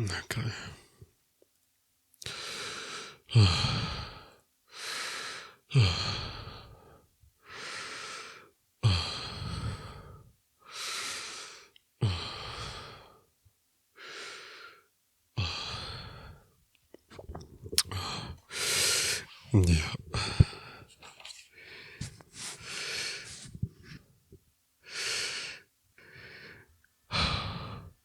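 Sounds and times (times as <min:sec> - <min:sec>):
man breathing heavily: 0:17.8 - 0:20.9, 0:21.6 - 0:24.0.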